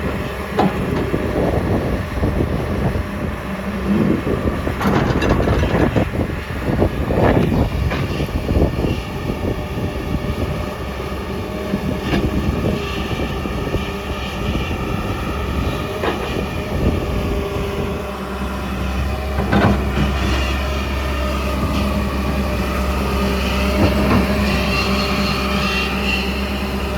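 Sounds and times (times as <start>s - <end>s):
excavator diesel engine under load: 0.0s - 26.9s
metallic clanks from tracks and bucket: 0.4s - 1.8s, 3.9s - 6.3s, 19.1s - 26.9s.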